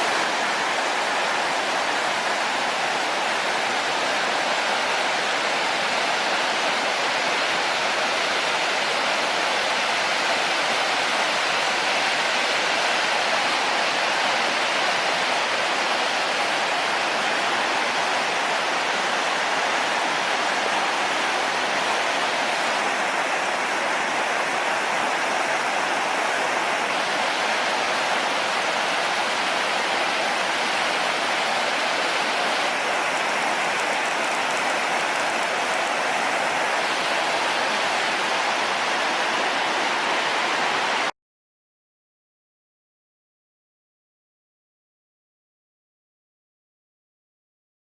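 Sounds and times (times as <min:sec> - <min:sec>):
waterfall pouring over rocks: 0:00.0 - 0:41.1.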